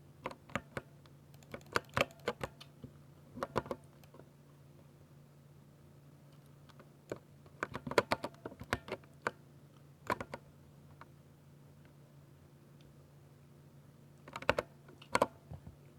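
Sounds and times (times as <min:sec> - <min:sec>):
mechanical keyboard typing: 0:00.2 - 0:02.6, 0:07.6 - 0:09.0, 0:14.3 - 0:15.3.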